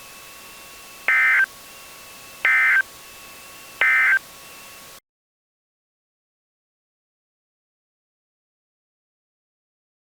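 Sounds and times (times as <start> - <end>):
faint hiss and whine: 0.0 - 5.0
shrill data tone bursts: 1.1 - 1.5, 2.5 - 2.8, 3.8 - 4.2.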